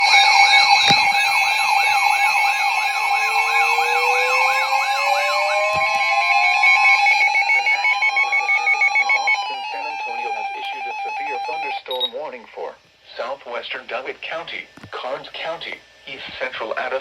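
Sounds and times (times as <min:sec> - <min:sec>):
slow siren wail: 0:00.0 - 0:11.9
fast electronic siren yelp: 0:00.0 - 0:12.1
steady alert tones: 0:00.0 - 0:12.1.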